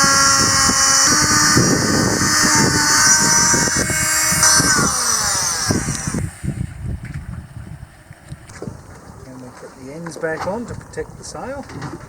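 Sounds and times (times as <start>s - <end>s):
rattling and knocking of cutting: 0.0s - 6.3s
power tool motor whining: 0.0s - 7.2s.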